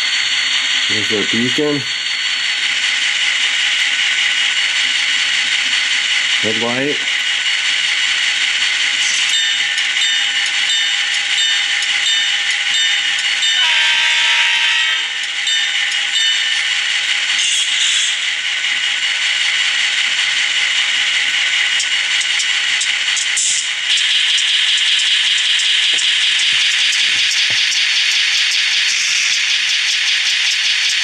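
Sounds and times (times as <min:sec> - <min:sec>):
diesel locomotive idling: 0:00.0 - 0:27.8
locomotive horn blast: 0:13.4 - 0:15.1.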